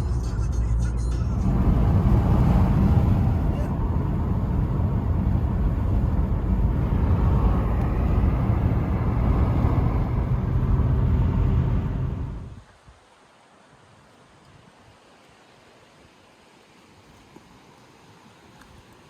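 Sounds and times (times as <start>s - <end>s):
car interior road noise: 0.0s - 12.6s.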